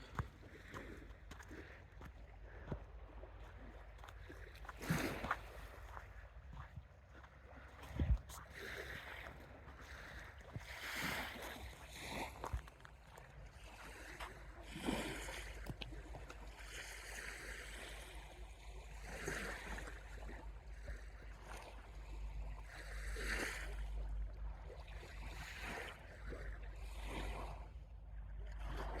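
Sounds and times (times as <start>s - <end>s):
small waves washing onto shore: 0.0s - 27.8s
steady low rumble: 15.3s - 29.0s.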